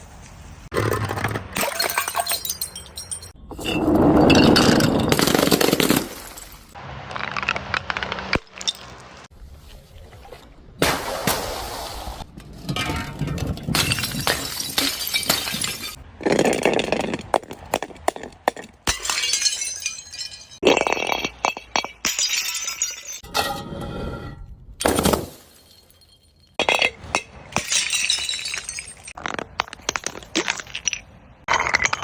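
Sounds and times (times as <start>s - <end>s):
glass bottles breaking: 1.0s - 6.7s, 8.3s - 9.0s, 12.7s - 17.1s, 18.8s - 23.5s, 24.8s - 32.0s
glass shards tinkling: 1.6s - 5.0s, 25.6s - 26.9s.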